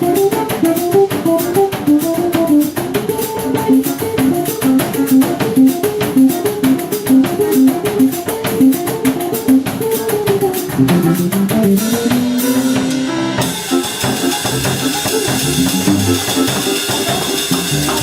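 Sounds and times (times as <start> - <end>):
drum kit beat: 0.0 - 18.0
plucked guitar line: 0.0 - 18.0
bass notes: 10.7 - 18.0.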